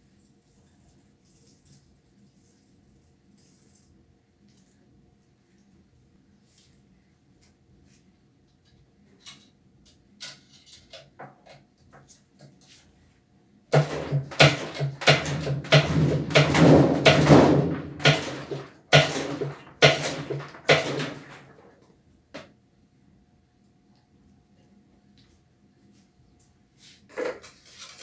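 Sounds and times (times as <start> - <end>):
parts knocking and clattering: 13.8 - 21.7.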